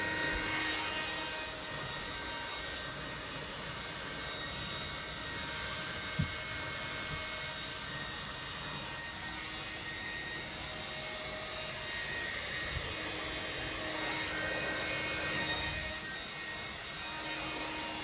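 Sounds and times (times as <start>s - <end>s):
hair dryer blowing: 0.0s - 18.0s.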